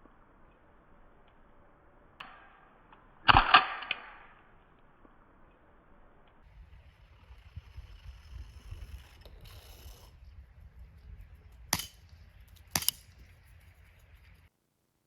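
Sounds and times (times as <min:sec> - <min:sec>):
air pistol shots: 0:02.2 - 0:04.5, 0:11.6 - 0:13.3.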